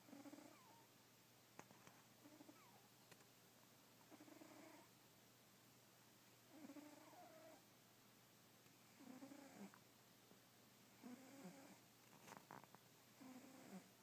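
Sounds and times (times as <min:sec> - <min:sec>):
cat snoring: 0:00.0 - 0:00.9, 0:02.2 - 0:02.8, 0:04.1 - 0:04.9, 0:06.5 - 0:07.6, 0:08.9 - 0:09.8, 0:11.0 - 0:11.8, 0:13.2 - 0:14.0.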